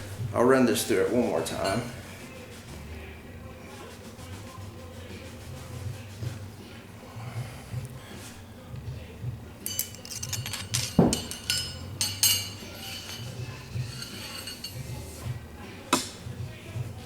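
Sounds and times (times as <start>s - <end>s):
cleaning rod clinking in shotgun barrel: 9.6s - 14.8s.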